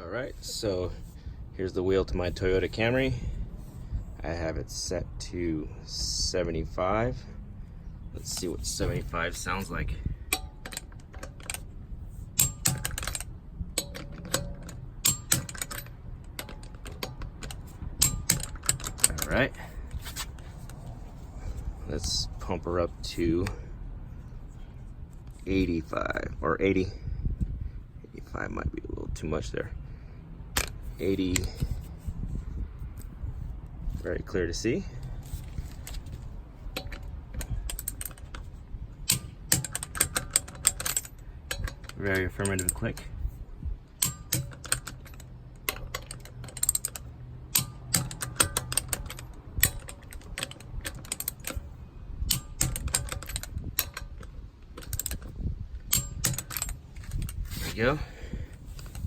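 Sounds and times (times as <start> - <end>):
low wind rumble: 0.0 - 59.0
sharp wrench clicks: 12.4 - 19.4, 36.8 - 43.1, 44.0 - 57.5.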